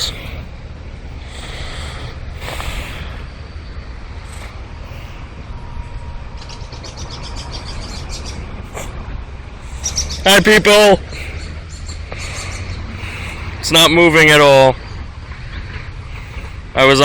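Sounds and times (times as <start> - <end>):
bird chirping trill: 6.4 - 8.6, 9.6 - 12.9.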